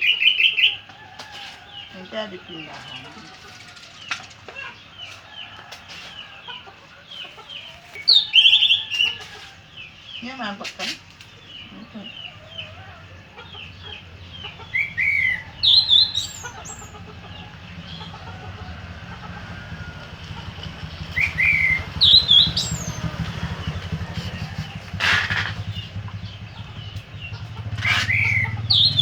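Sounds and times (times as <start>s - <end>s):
bird chirping and whistling: 8.0s - 9.1s, 14.8s - 17.0s, 21.1s - 23.1s, 27.4s - 29.0s.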